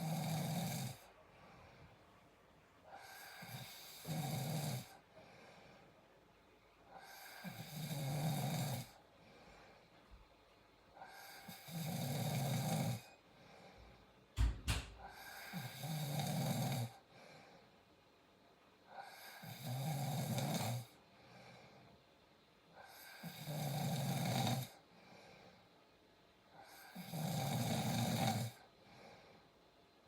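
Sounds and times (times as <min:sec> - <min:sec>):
cat snoring: 0:00.0 - 0:01.1, 0:02.9 - 0:05.0, 0:07.0 - 0:09.0, 0:11.0 - 0:13.2, 0:15.0 - 0:17.0, 0:18.9 - 0:21.6, 0:22.8 - 0:24.8, 0:26.6 - 0:29.1
quiet breathing: 0:00.0 - 0:30.0.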